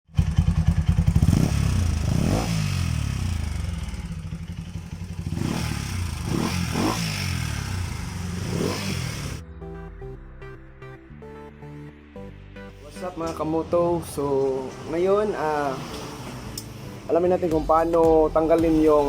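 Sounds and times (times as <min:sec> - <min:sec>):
motorcycle engine revving: 0:00.1 - 0:09.4, 0:14.1 - 0:17.4, 0:18.3 - 0:19.0.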